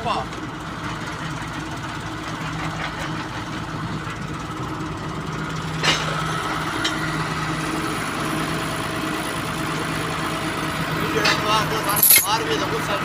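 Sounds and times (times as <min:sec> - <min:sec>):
sharp metallic clank: 0:11.3 - 0:12.4.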